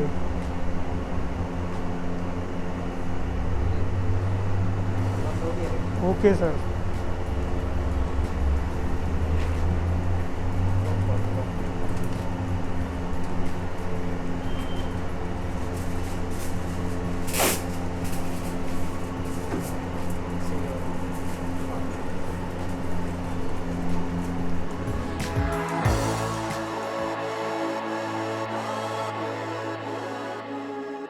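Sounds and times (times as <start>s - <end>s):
indistinct voices: 20.3s - 31.0s.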